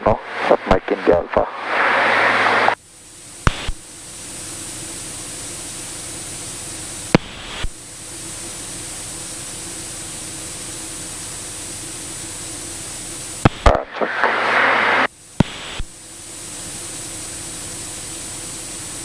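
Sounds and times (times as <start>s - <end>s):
intercom radio hiss: 0.0s - 19.0s
sharp click: 3.5s - 3.8s.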